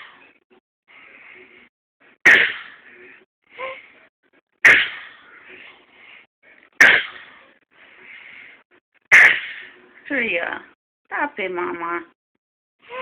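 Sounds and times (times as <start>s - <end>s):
baby fake coughing: 2.3s - 2.8s, 4.6s - 5.1s, 6.8s - 7.3s, 9.1s - 9.6s.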